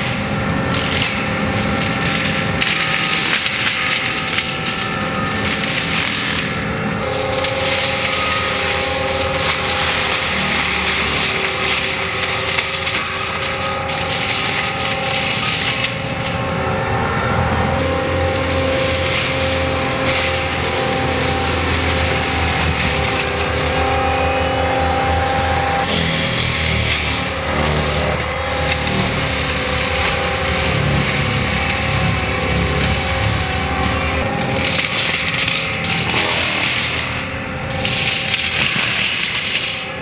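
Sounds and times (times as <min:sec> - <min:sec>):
engine running: 0:00.0 - 0:40.0
mulcher teeth grinding wood: 0:00.0 - 0:40.0.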